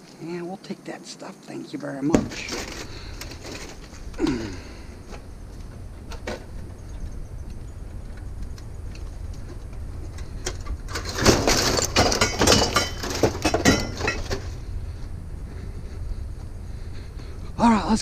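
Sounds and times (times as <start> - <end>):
steady low rumble: 2.7 - 18.0
metal clattering and banging: 9.0 - 14.7
hard items knocking: 10.4 - 14.6.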